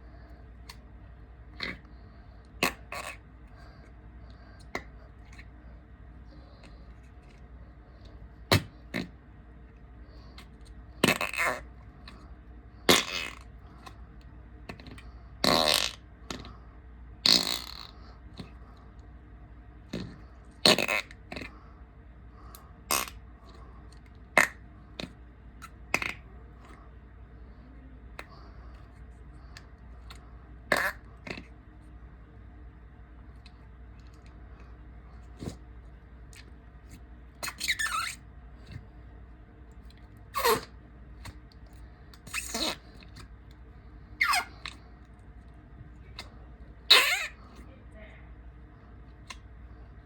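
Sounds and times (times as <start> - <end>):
short fart sounds: 12.9 - 13.5, 15.4 - 16.0, 17.2 - 17.9, 20.0 - 21.5, 22.9 - 23.2, 30.7 - 31.0, 42.3 - 42.9.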